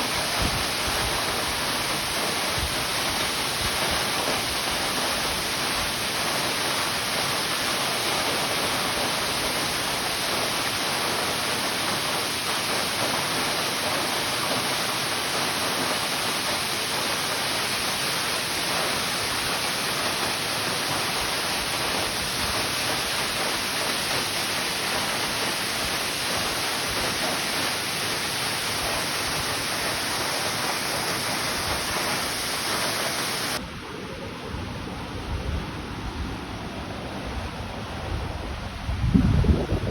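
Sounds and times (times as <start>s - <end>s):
waterfall rushing: 0.0s - 33.7s
low wind-like rumbles: 37.3s - 39.9s.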